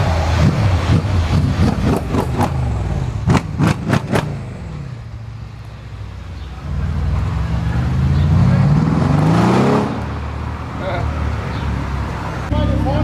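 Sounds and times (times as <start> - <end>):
car engine revving: 0.0 - 12.6
car exhaust pops and crackles: 0.4 - 4.4.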